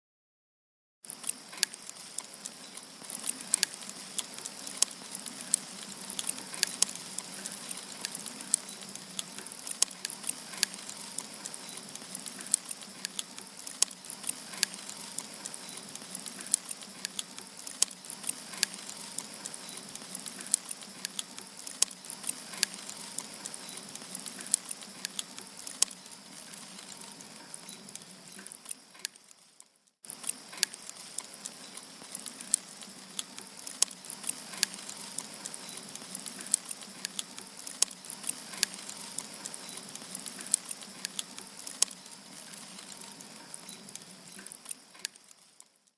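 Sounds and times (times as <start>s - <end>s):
campfire crackling and popping: 1.1s - 45.9s.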